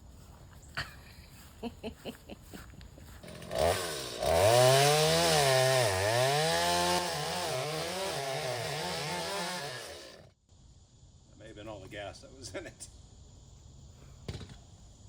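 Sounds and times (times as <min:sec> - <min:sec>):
chainsaw starting and revving: 0:03.2 - 0:10.3.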